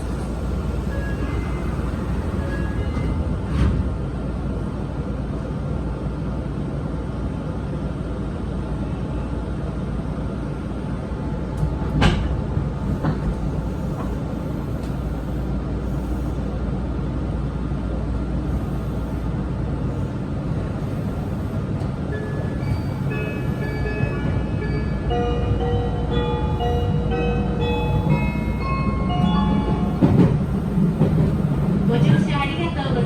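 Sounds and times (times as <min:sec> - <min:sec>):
train rumble inside passenger car: 0:00.0 - 0:33.0.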